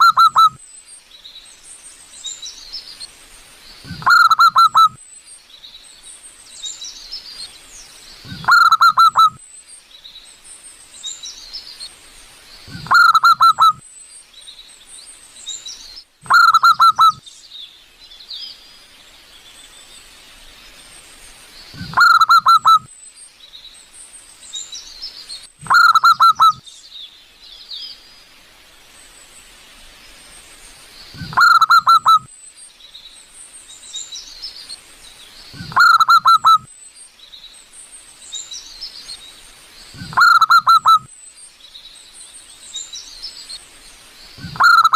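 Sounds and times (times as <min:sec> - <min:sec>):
small birds chirping faintly: 0:00.0 - 0:44.9
dove cooing: 0:03.9 - 0:04.9, 0:08.3 - 0:09.4, 0:12.7 - 0:13.8, 0:16.2 - 0:17.2, 0:21.8 - 0:22.9, 0:25.6 - 0:26.6, 0:31.2 - 0:32.3, 0:40.0 - 0:41.1, 0:44.4 - 0:44.9.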